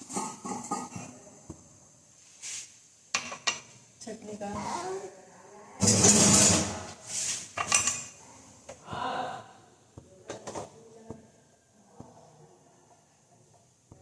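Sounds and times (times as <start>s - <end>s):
dishes and utensils clattering: 0.0s - 1.2s, 3.2s - 3.7s, 5.8s - 8.2s.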